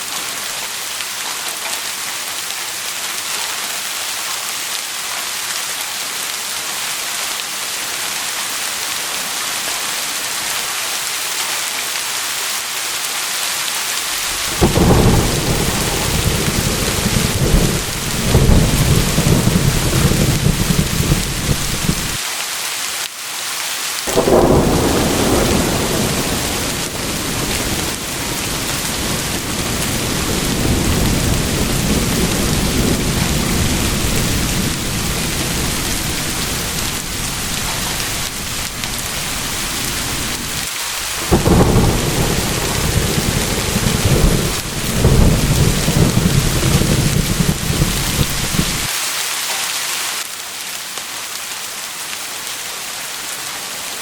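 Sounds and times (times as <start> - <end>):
steady rain: 0.0 - 54.0
rolling thunder: 14.1 - 22.2, 24.1 - 48.9.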